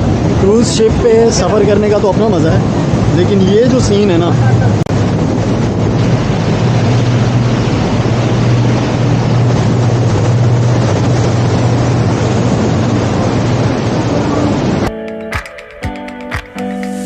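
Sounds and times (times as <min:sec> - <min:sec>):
constant rushing noise: 0:00.0 - 0:17.0
ship engine droning: 0:00.0 - 0:17.0.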